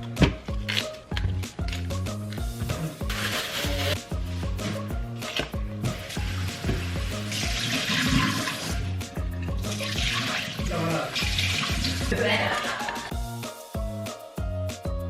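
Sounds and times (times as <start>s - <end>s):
background music with steady beat: 0.0s - 15.0s
tap water rinsing vegetables: 2.5s - 4.0s, 4.6s - 13.1s.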